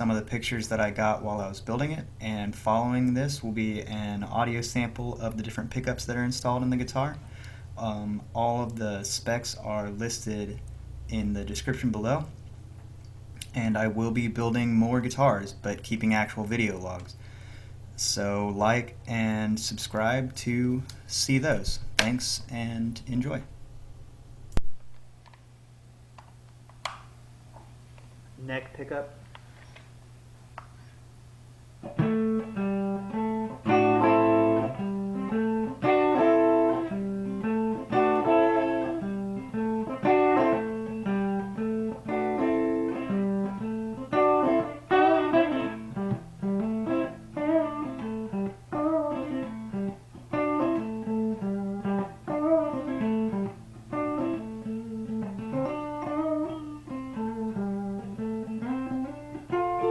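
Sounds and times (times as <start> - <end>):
steady low hum: 0.0 - 59.4
electric guitar notes and chords: 31.8 - 59.9.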